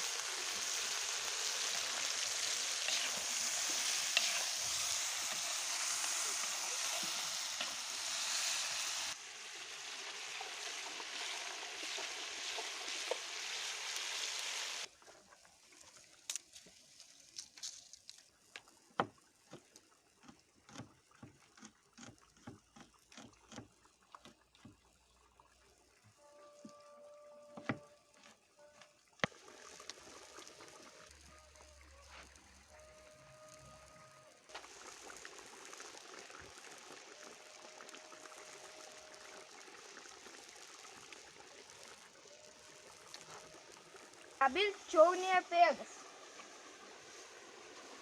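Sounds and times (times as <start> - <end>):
food sizzling in oil: 0.0 - 14.9, 34.5 - 48.0.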